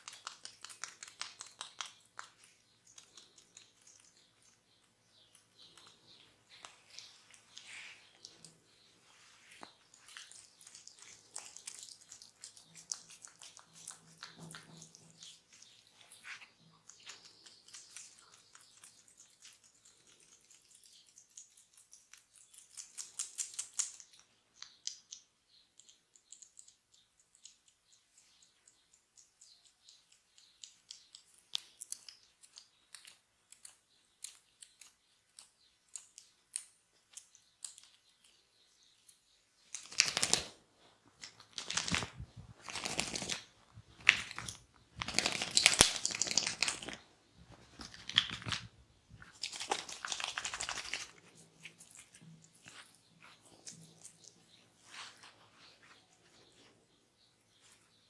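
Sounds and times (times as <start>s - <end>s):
fingers crackling on oiled skin: 0.0s - 8.8s, 9.4s - 55.4s
hands rubbing strokes: 9.0s - 11.8s, 49.3s - 56.7s.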